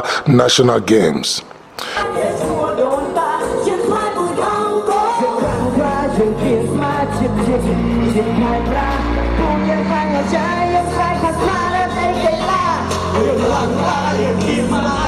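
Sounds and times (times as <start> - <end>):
pop song with singer: 1.8 - 15.0
steady bass line: 5.4 - 15.0.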